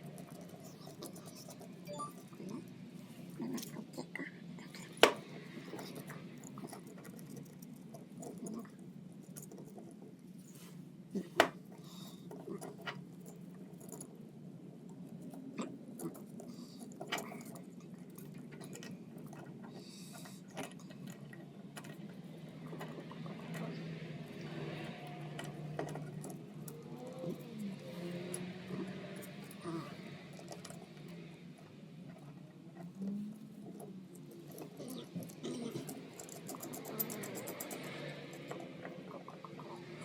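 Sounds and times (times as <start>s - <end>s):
clicks and clinks of metal parts: 34.4s - 39.1s.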